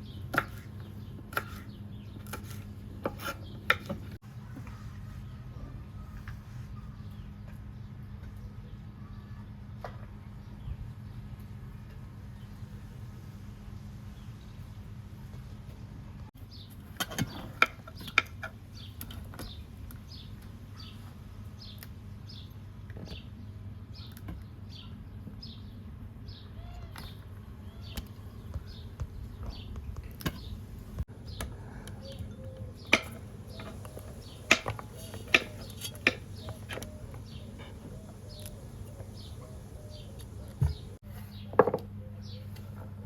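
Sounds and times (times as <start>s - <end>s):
bird calling: 31.2s - 42.8s.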